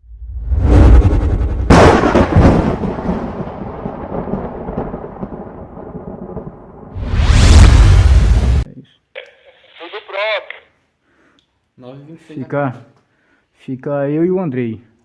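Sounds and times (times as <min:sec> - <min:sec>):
whoosh: 0:00.0 - 0:02.6, 0:07.0 - 0:08.7
heavy boom impact: 0:00.5 - 0:04.9, 0:06.9 - 0:08.7.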